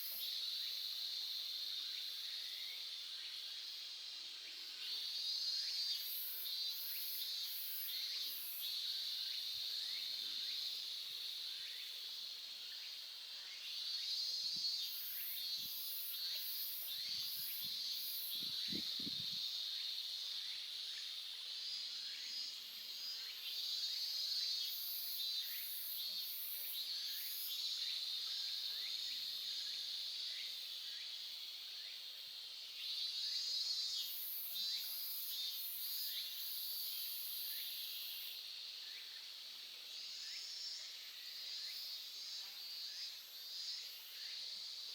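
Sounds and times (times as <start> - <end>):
insects trilling: 4.6 - 44.9.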